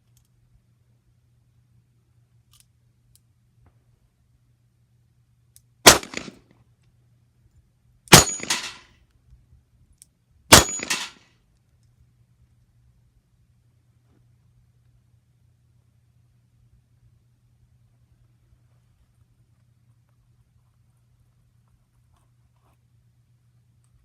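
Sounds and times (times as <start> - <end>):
steel targets clattering and ringing: 8.1 - 8.8, 10.6 - 11.2.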